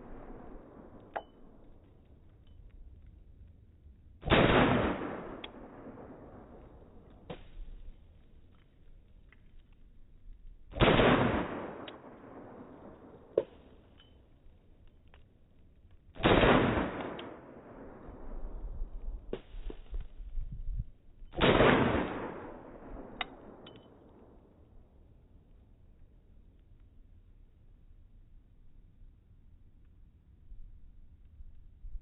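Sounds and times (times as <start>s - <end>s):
slowed-down pistol shots: 4.2s - 8.0s, 10.7s - 14.0s, 16.1s - 20.2s, 21.3s - 24.5s.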